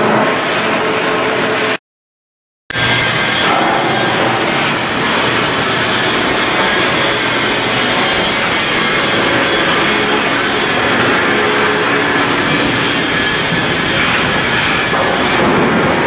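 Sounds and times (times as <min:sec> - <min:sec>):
shipyard machinery running: 0:00.0 - 0:01.8, 0:02.7 - 0:16.0.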